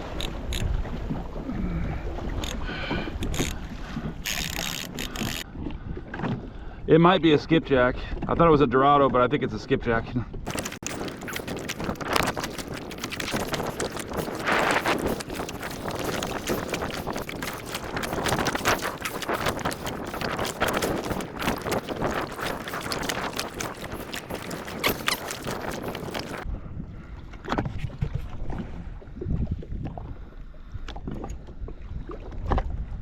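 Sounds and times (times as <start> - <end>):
water splashing against boat: 0.0 - 6.7, 10.5 - 26.5
wind on microphone: 10.5 - 33.0.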